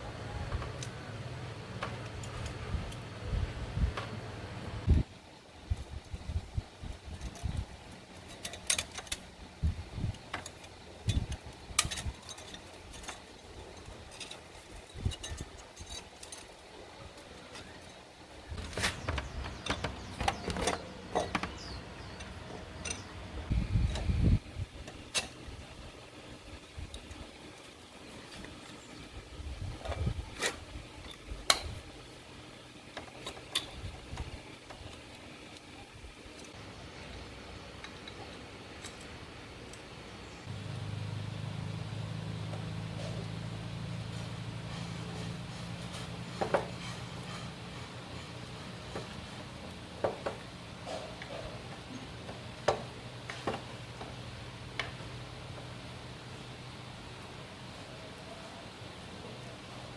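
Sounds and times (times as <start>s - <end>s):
sharp clicks and knocks: 18.6s - 23.2s.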